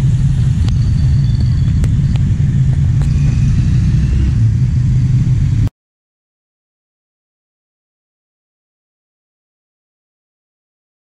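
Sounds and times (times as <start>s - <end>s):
vehicle engines running: 0.0s - 5.7s.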